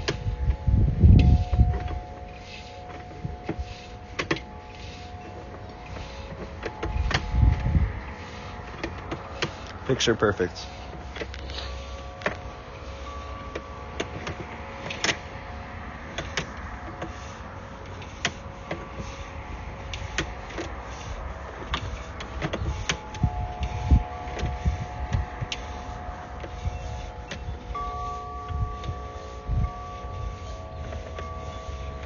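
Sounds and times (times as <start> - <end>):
cable clicks and knocks: 4.2 - 4.5.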